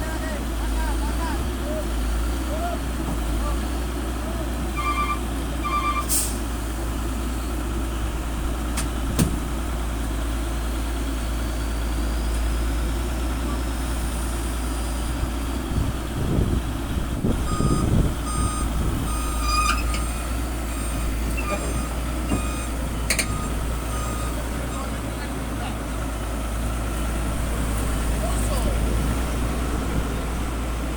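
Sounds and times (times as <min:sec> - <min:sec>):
diesel engine running: 0:00.0 - 0:30.9
warning beep: 0:04.8 - 0:06.1, 0:17.5 - 0:20.2.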